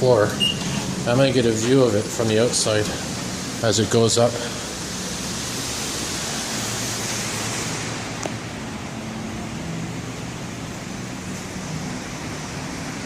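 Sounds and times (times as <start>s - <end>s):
background hiss of indoor space: 0.0s - 13.0s.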